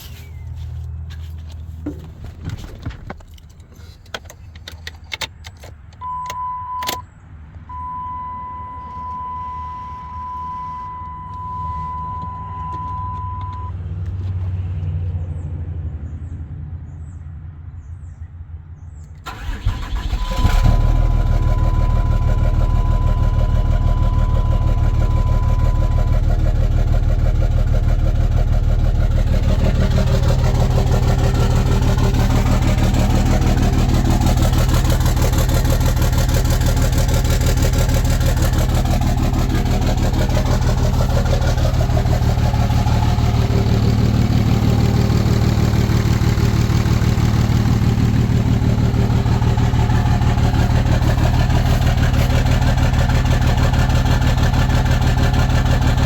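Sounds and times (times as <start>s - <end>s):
car engine starting and idling: 0.0s - 14.9s, 19.0s - 56.0s.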